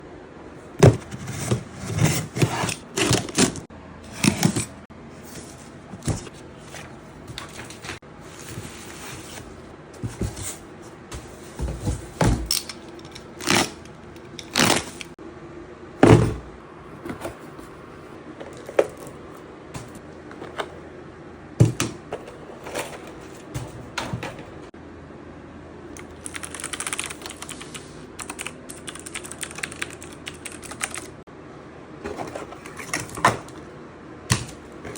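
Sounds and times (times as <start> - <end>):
cardboard box scraping and knocking: 8.4 - 12.4.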